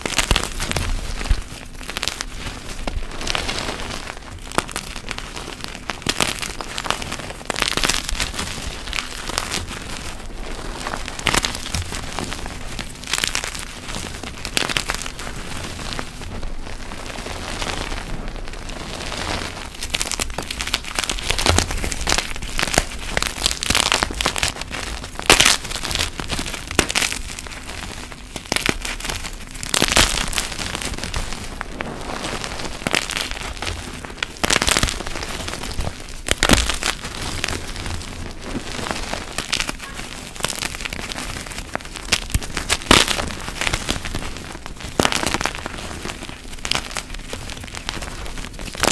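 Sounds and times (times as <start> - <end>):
chalk blocks crunching: 17.0 - 48.9.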